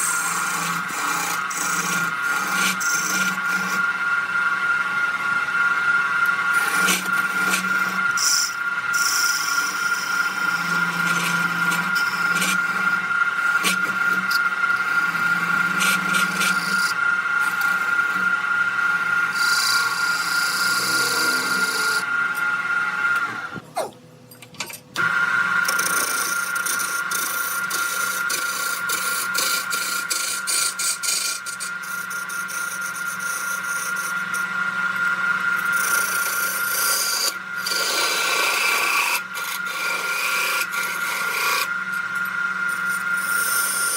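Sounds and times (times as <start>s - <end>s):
turning tool scraping wood: 0.0s - 4.0s, 6.2s - 18.3s, 19.2s - 22.1s, 25.0s - 34.5s, 35.6s - 43.9s
wood lathe whining: 0.0s - 23.9s, 25.0s - 43.9s.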